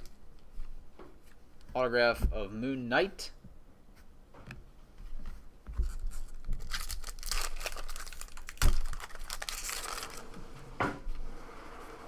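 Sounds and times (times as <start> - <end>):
plastic wrapper tearing and crinkling: 5.8 - 10.4.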